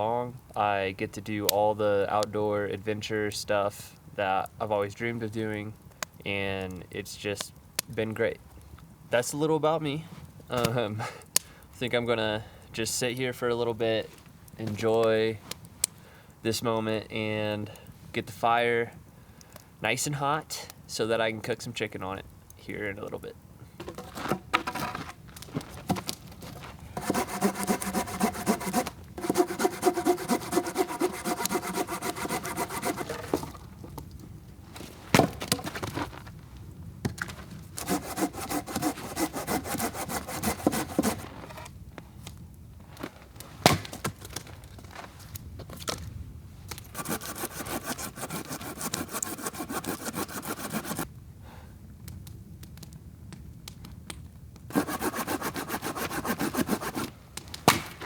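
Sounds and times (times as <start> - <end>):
hand saw cutting firewood: 23.8 - 25.1, 25.7 - 33.8, 37.8 - 41.7, 46.9 - 51.1, 54.7 - 57.8.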